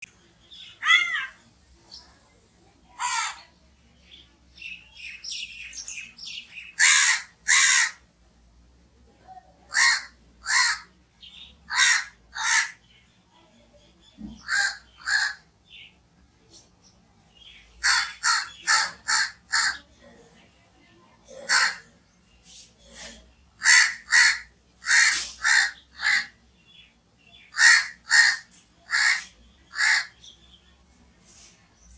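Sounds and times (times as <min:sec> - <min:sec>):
crows cawing: 0:00.8 - 0:01.4, 0:03.0 - 0:03.4, 0:06.6 - 0:08.0, 0:09.7 - 0:10.9, 0:11.7 - 0:12.8, 0:14.4 - 0:15.4, 0:17.8 - 0:19.8, 0:21.4 - 0:21.9, 0:23.6 - 0:26.4, 0:27.5 - 0:30.2.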